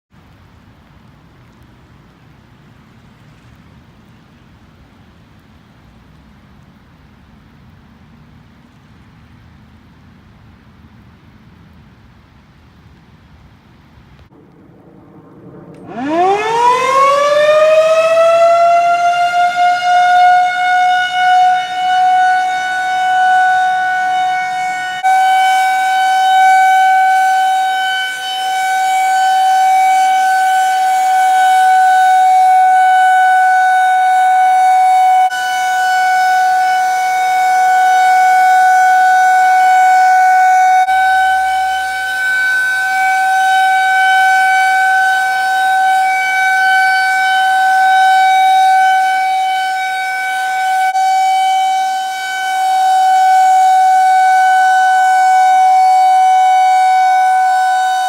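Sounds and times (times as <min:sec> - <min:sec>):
warning siren steady tone: 0:14.3 - 0:58.0.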